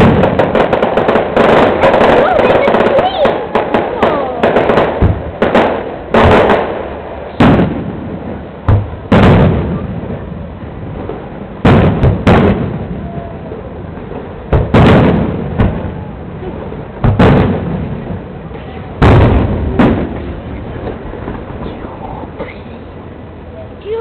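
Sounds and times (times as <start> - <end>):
fireworks booming with echo: 0.0 - 24.0.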